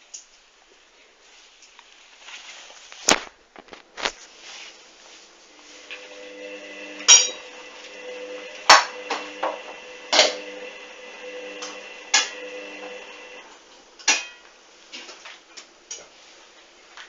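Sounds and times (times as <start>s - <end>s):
washing machine motor humming: 5.5s - 13.6s.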